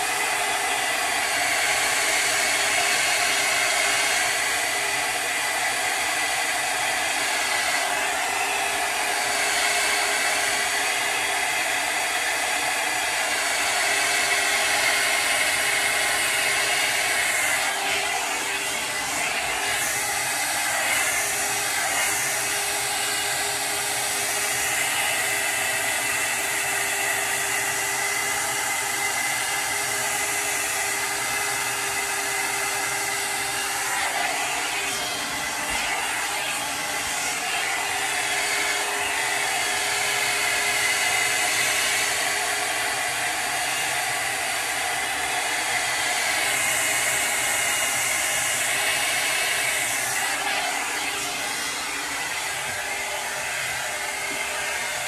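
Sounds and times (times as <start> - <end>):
electric motor blowing air: 0.0 - 55.0.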